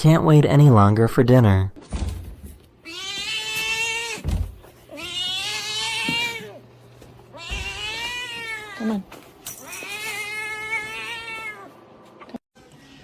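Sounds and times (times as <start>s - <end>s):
cat meowing: 2.8s - 4.2s, 4.9s - 6.6s, 7.3s - 11.7s.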